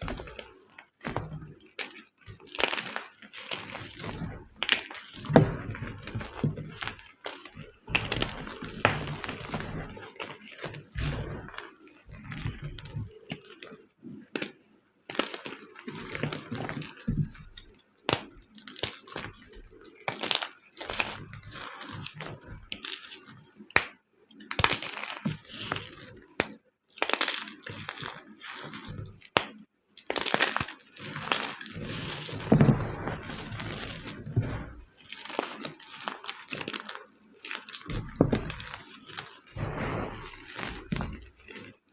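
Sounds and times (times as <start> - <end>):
chalk crunching and crumbling: 30.2 - 36.7, 37.5 - 41.7
chalk crunching and crackling: 37.5 - 41.7.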